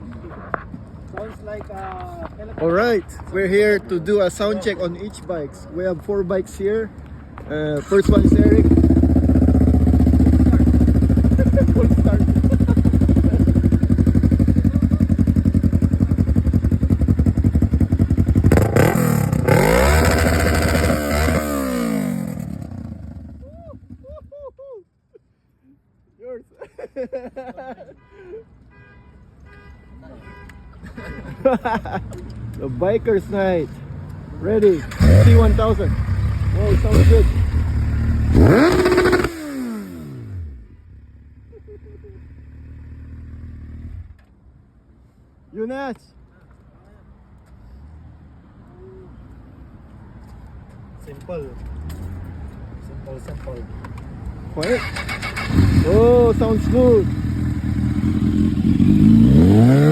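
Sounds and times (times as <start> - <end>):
motorcycle engine revving: 7.8 - 23.4, 34.7 - 40.8, 54.6 - 59.9
motorcycle engine idling: 8.0 - 18.9.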